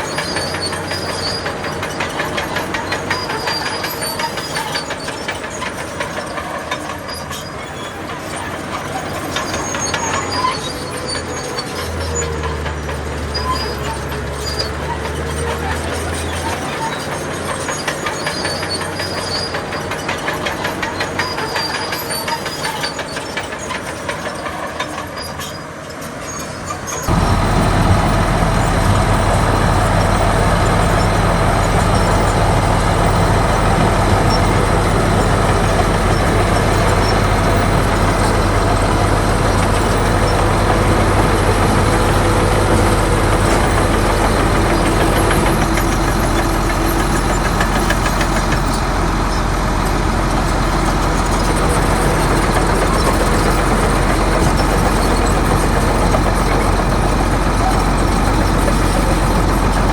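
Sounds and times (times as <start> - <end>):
diesel engine running: 0.0 - 59.9
metallic clanking and rattling: 26.9 - 59.9.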